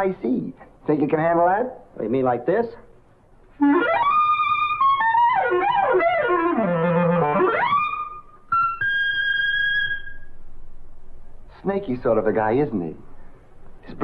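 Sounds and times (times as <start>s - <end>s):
solo reed instrument playing: 3.6s - 10.2s.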